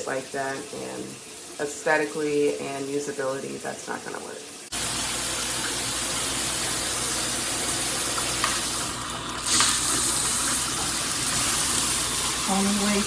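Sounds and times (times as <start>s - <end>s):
shower head spraying water: 4.7s - 13.0s.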